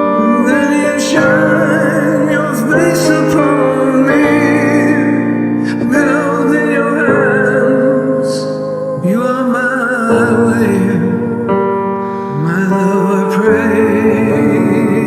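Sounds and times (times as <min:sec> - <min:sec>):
male and female vocal duet: 0:00.0 - 0:15.0.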